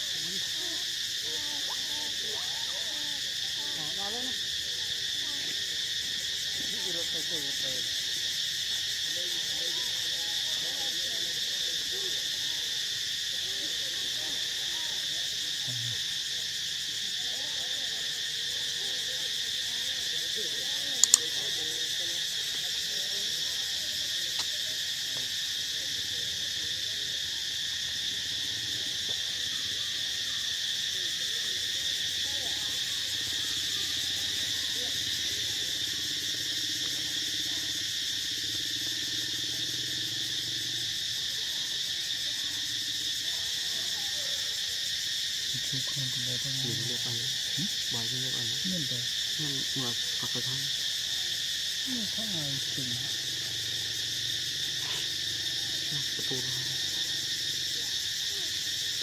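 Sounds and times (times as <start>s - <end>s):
insect chorus drone: 0.0s - 59.0s
sharp clicks: 21.0s - 21.3s.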